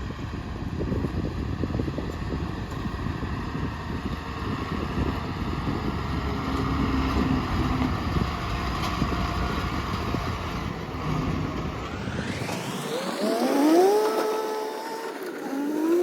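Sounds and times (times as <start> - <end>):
heavy diesel engine rumble: 0.0 - 12.4.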